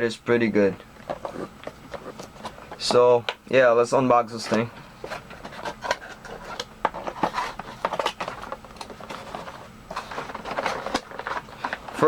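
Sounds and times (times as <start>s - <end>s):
packaging rustling: 4.3s - 12.0s.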